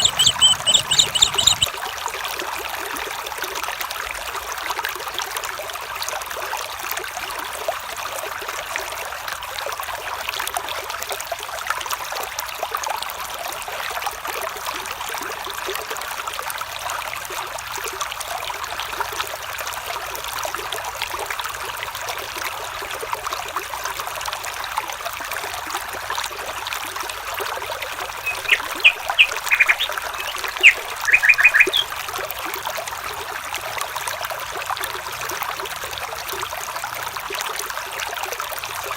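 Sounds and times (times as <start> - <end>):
small animal high calls: 0.0 - 1.7, 28.1 - 31.9
stream trickling: 0.0 - 38.9.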